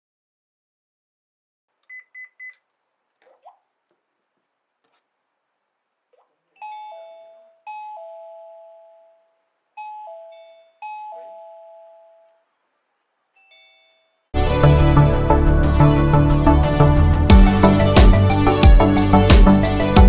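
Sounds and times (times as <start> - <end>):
doorbell two-tone chime: 9.8 - 12.3.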